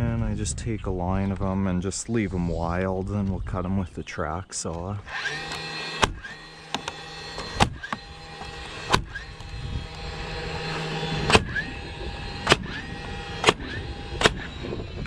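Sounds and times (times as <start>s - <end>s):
stapler motor whirring: 5.0s - 15.0s
stapler firing staples into wood: 5.2s - 10.0s, 11.2s - 11.6s, 12.4s - 14.5s.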